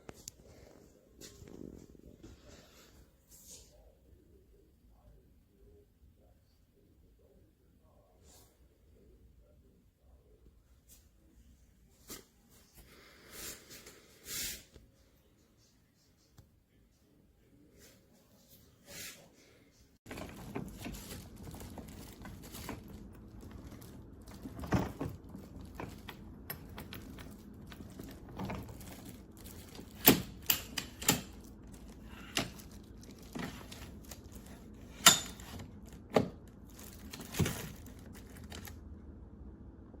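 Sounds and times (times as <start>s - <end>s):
low steady background hum: 0.0s - 40.0s.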